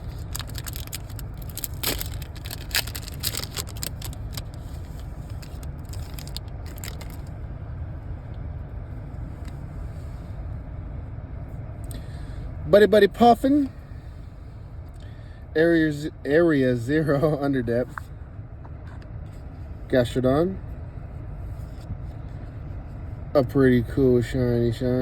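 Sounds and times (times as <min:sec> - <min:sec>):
cards being handled: 0:00.0 - 0:07.3
foil wrapper crinkling and tearing: 0:00.0 - 0:07.3
low rumble: 0:00.0 - 0:08.3.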